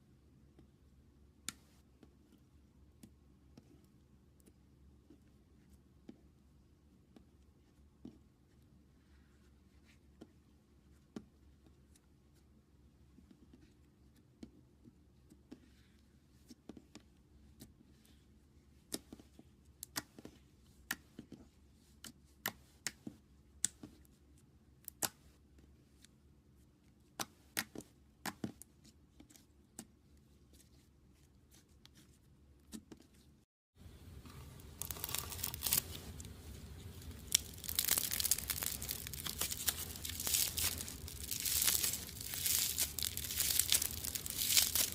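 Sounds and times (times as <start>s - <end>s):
crinkly crackling: 33.8s - 44.9s.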